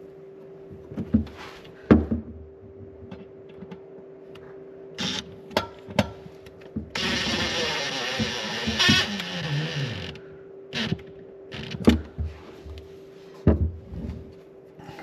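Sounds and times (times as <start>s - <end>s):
loud steady mechanical noise: 4.3s - 13.0s.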